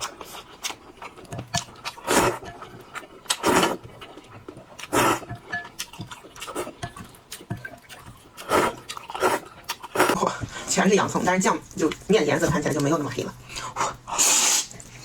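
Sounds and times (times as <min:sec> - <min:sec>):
chewing and mouth clicks: 0:00.0 - 0:10.2
person slurping noodles: 0:02.0 - 0:02.4, 0:03.3 - 0:03.9, 0:04.8 - 0:05.3, 0:08.4 - 0:10.2.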